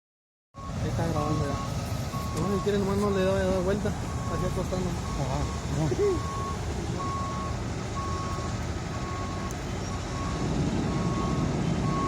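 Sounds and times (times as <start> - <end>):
backup alarm beeping: 0.6 - 12.0
diesel engine running: 0.6 - 12.0.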